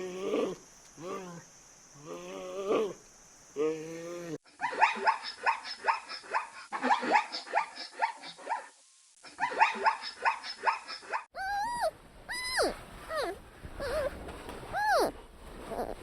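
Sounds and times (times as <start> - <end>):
animal barking: 9.5 - 15.1.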